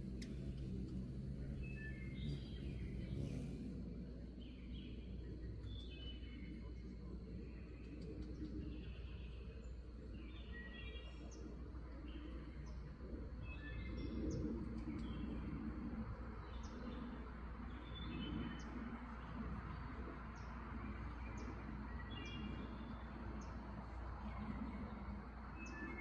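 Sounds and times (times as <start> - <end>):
low background rumble: 0.0 - 10.1
small birds chirping: 0.0 - 15.6.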